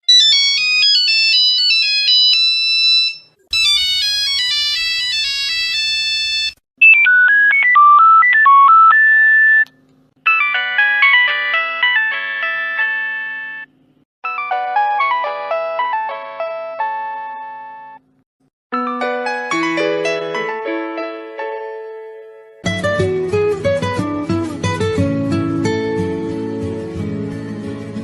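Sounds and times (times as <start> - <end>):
mobile phone ringtones: 0.1 - 9.7, 10.3 - 13.7.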